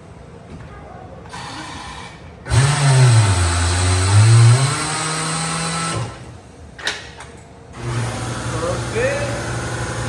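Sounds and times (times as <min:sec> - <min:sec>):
machine motor running: 0:01.3 - 0:06.4, 0:07.8 - 0:10.0.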